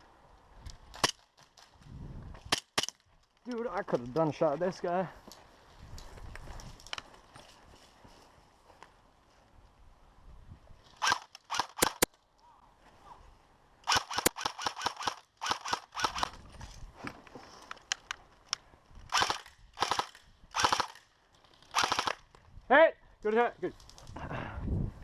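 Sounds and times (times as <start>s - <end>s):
airsoft guns firing bursts: 11.0s - 12.1s, 13.9s - 16.4s, 19.1s - 21.0s, 21.7s - 22.2s.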